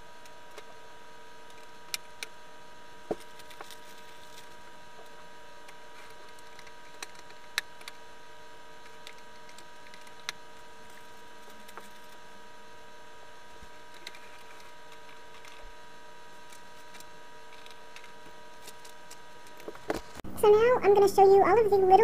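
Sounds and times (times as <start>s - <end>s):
thin electrical whine: 0.0s - 22.0s.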